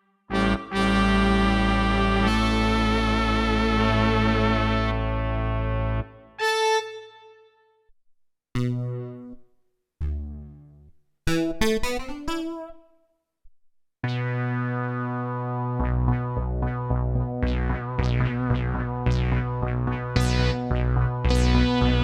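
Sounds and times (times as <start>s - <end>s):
synthesizer keyboard notes: 0.3s - 7.2s, 8.6s - 9.4s, 14.0s - 22.0s.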